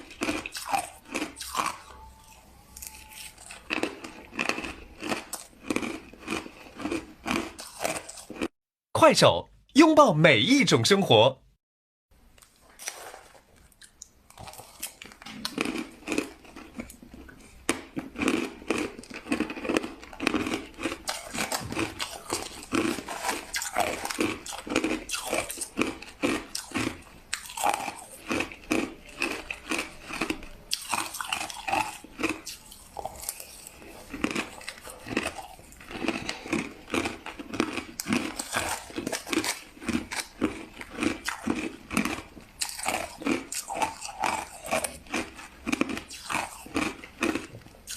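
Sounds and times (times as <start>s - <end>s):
crushed ice being chewed: 0.0s - 8.6s, 12.4s - 47.9s.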